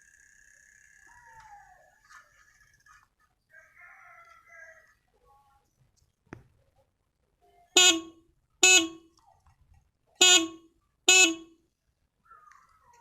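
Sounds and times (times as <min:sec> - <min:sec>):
motorcycle horn beeps: 0:07.8 - 0:09.1, 0:10.2 - 0:11.5.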